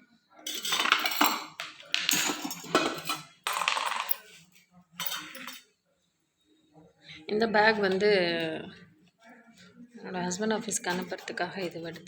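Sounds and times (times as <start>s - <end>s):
metal containers clinking: 0.5s - 4.4s, 5.0s - 5.6s.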